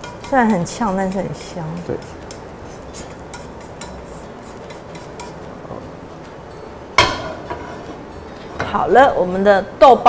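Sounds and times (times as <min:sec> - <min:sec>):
utensils clinking on dishes: 0:07.0 - 0:08.9.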